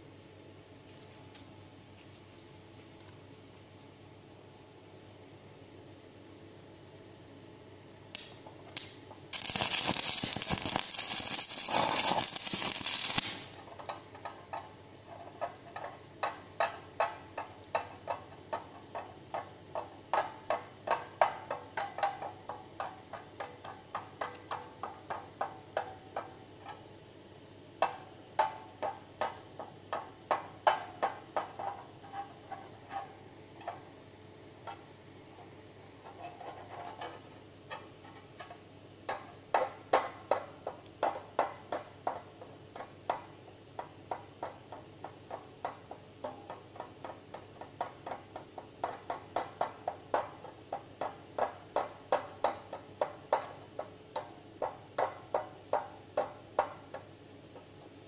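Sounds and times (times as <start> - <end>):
welding arc crackling: 8.2 - 14.7.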